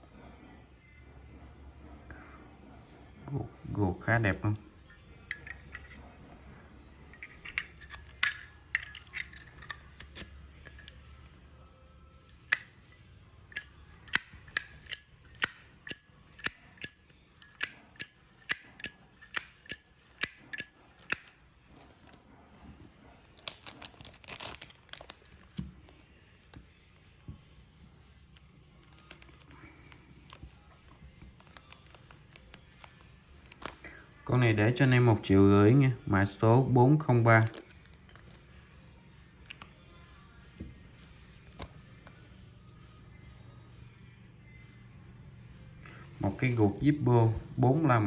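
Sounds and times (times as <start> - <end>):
lighter metallic clicks: 12.3 - 12.8, 13.6 - 21.4.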